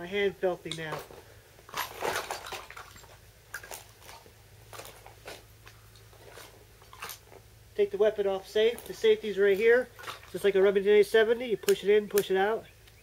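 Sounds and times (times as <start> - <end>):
rustling handling noise: 0.6 - 10.7.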